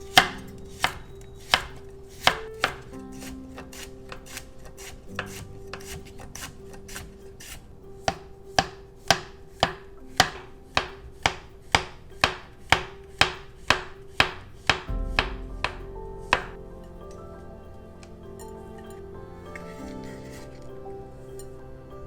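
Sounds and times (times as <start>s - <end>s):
knife chopping on cutting board: 0.1s - 7.1s.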